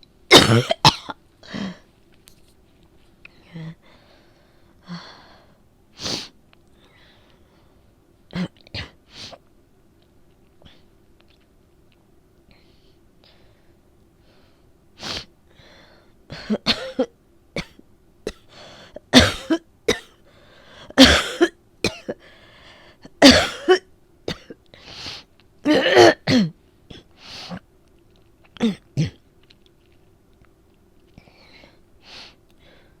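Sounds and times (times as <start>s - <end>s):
woman coughing: 0.3s - 1.2s, 16.3s - 18.5s, 19.1s - 20.2s, 20.9s - 22.2s, 23.2s - 24.6s, 25.7s - 26.6s.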